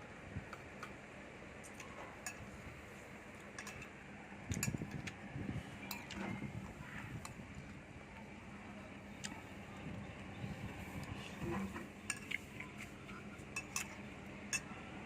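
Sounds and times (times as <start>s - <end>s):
steady background hum: 0.0s - 15.0s
cutlery clinking on dishes: 13.6s - 14.7s.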